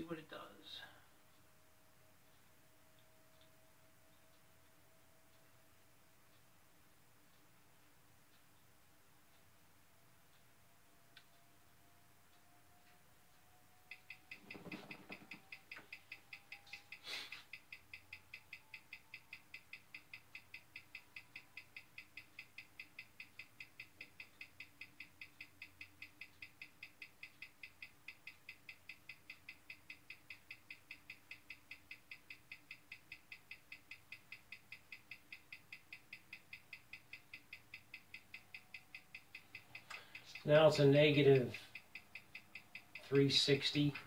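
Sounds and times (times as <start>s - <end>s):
wristwatch ticking: 0.1s - 6.6s, 8.2s - 44.0s.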